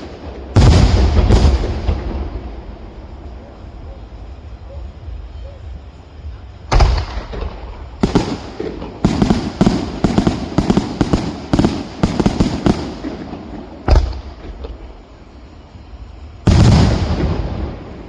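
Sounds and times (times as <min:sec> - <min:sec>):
fireworks bangs: 0:00.0 - 0:04.4, 0:06.6 - 0:15.1, 0:16.4 - 0:18.0.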